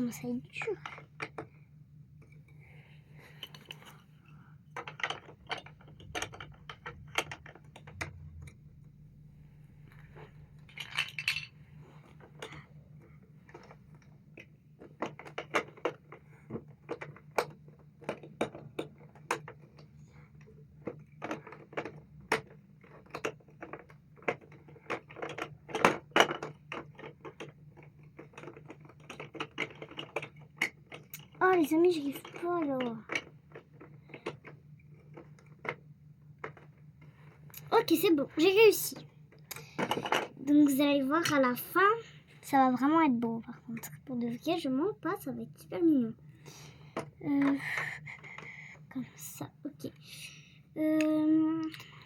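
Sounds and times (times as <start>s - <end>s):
low steady hum: 0.0s - 52.0s
plastic bricks clicking: 10.6s - 11.5s, 20.8s - 31.4s.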